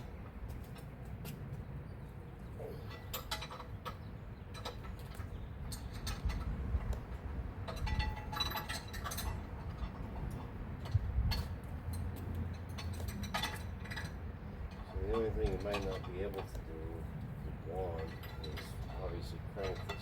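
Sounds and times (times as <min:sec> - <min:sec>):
hand tools clinking on metal: 0:07.7 - 0:17.0, 0:17.7 - 0:20.0.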